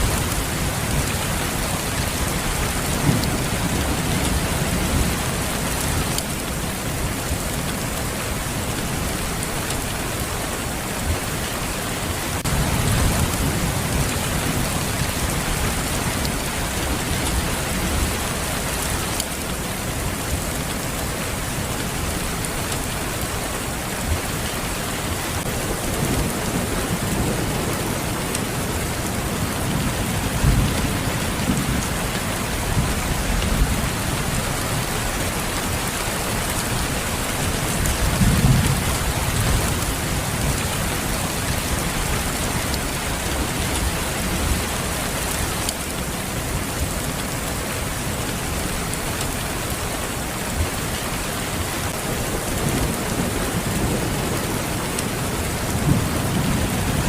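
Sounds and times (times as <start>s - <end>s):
thunder rumbles: 0.0s - 6.2s, 25.4s - 44.6s
steady rain falling: 0.0s - 57.0s.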